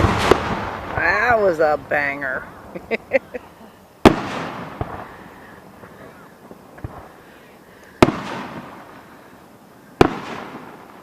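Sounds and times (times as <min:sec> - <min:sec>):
firework bang echoing: 0:00.0 - 0:03.0, 0:04.0 - 0:07.2, 0:08.0 - 0:09.1, 0:10.0 - 0:11.0.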